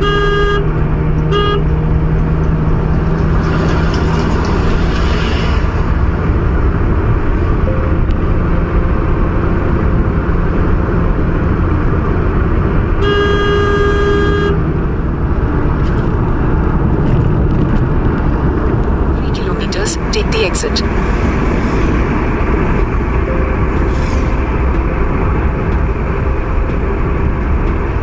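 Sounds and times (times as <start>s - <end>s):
vehicle horn: 0.0s - 1.8s, 13.0s - 14.7s
car engine hum: 0.0s - 28.0s.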